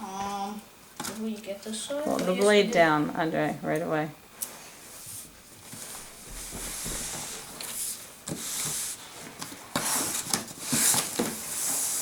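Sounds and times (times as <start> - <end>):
cardboard scraping and rubbing: 5.0 - 9.1, 9.7 - 12.0.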